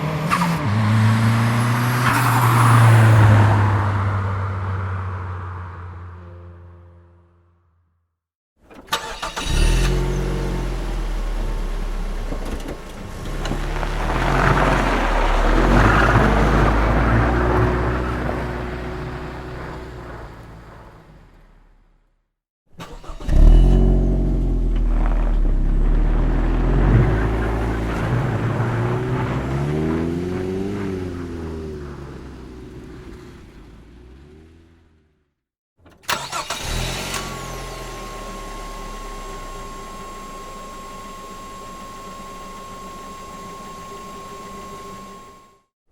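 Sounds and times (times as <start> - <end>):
car starter cranking: 8.6 - 11.4, 22.8 - 25.0, 35.8 - 38.7
car engine running: 22.8 - 35.1.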